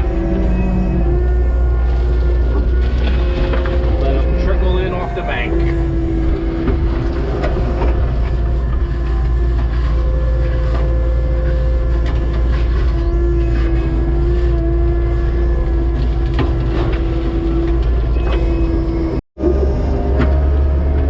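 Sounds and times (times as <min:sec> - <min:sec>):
diesel engine running: 0:00.0 - 0:21.0
engine whine: 0:00.0 - 0:21.0
knocks and clanks on gravel: 0:02.4 - 0:04.7.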